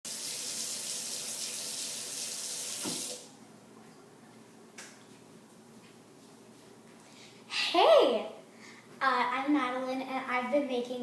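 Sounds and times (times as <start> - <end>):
tap water running into sink: 0.1 - 3.2.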